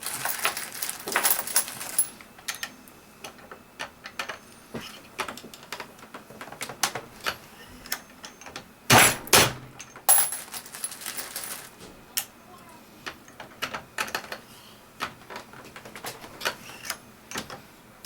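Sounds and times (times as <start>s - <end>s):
brass cases clinking: 0.0s - 2.2s, 9.0s - 11.7s.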